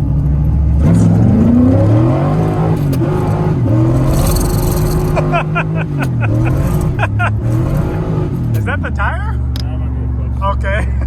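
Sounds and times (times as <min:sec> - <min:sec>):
car engine revving under throttle: 0:00.0 - 0:08.8.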